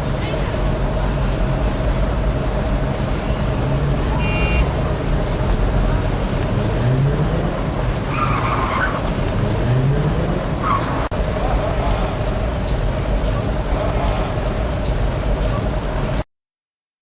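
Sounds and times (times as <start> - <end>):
street traffic: 0.0 - 16.3.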